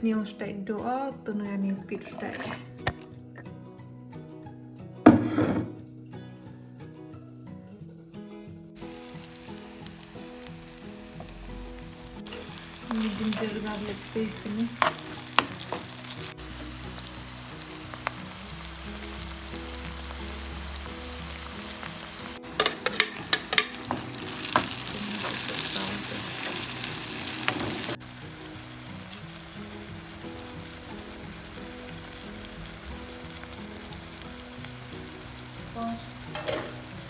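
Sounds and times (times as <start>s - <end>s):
food sizzling in a pan: 2.0s - 3.0s, 8.8s - 37.0s
utensil clacking against pan: 12.2s - 16.2s, 22.5s - 26.8s, 36.3s - 36.9s.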